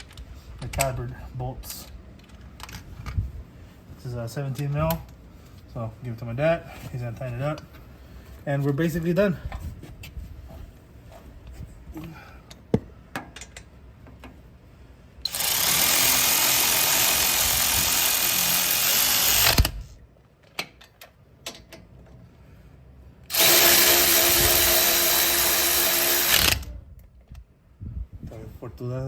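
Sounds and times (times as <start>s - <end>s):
power tool spinning a socket: 15.2s - 19.8s, 23.3s - 26.7s.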